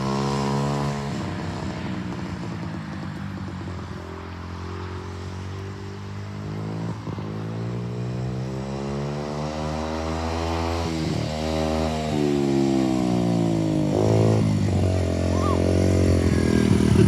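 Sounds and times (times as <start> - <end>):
atv engine running: 13.0 - 17.0.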